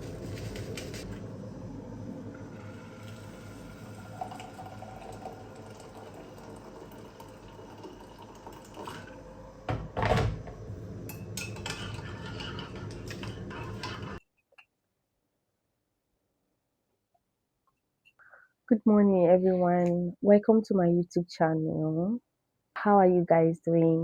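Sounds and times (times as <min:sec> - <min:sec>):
water running in sink: 0:02.3 - 0:09.2
dishes and cutlery clinking: 0:11.1 - 0:14.2.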